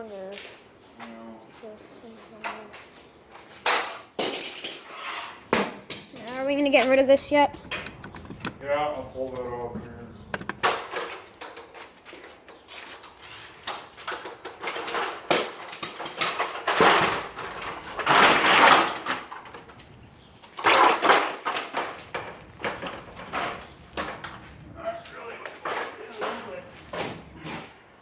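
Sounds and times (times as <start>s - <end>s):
scraping and rustling: 4.7s - 11.7s, 12.7s - 28.0s.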